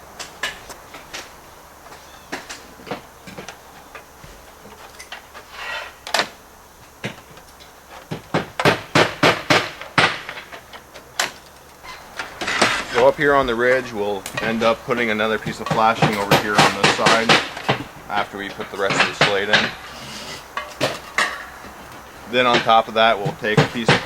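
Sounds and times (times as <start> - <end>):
brief scrape: 19.9 - 20.5.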